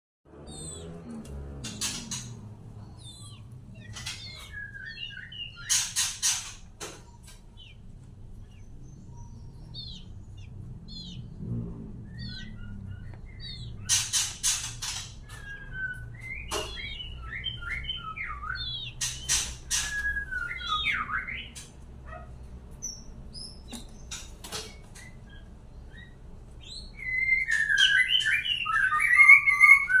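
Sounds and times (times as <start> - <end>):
bird chirping and whistling: 0.5 - 0.9, 1.6 - 6.5, 8.4 - 11.4, 12.0 - 21.7, 24.7 - 30.0
low steady hum: 6.6 - 13.9.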